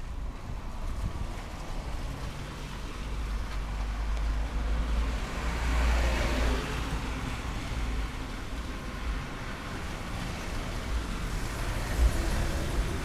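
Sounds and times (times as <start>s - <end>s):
wind rumble on microphone: 0.0s - 3.8s, 7.1s - 13.0s
road vehicle passing by: 0.7s - 13.0s.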